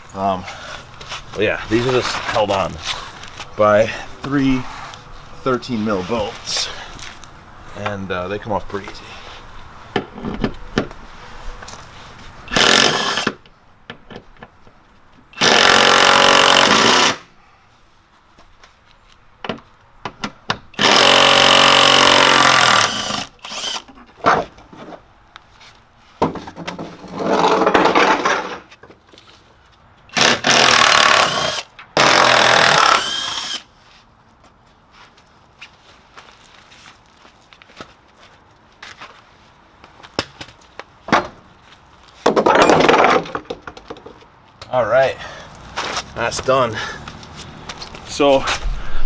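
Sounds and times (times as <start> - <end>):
power tool spinning bolts: 12.5 - 13.4, 15.4 - 17.2, 20.8 - 23.9, 30.2 - 33.6.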